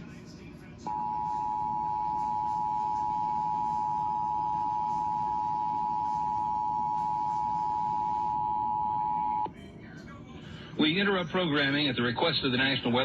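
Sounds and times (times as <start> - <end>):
faint radio hiss: 0.0 - 13.0.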